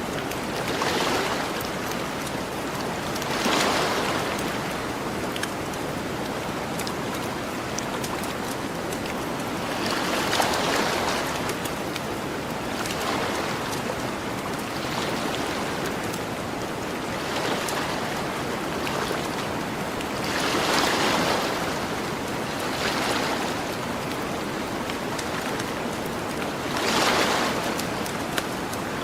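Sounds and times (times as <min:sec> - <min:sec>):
campfire crackling: 0:00.0 - 0:00.7, 0:04.2 - 0:09.7, 0:11.4 - 0:13.0
ocean waves washing onto beach: 0:00.0 - 0:29.0.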